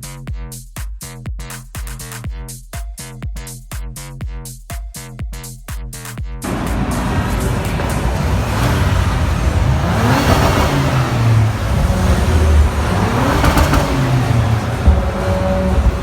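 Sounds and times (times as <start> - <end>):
exhaust crackle: 6.4 - 16.0
sports car engine revving: 6.4 - 16.0.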